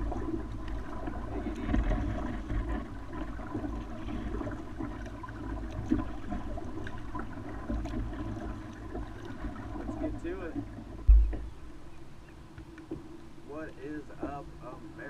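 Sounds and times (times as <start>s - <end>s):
water lapping against a kayak: 0.0s - 15.0s
low rumble: 11.0s - 11.8s.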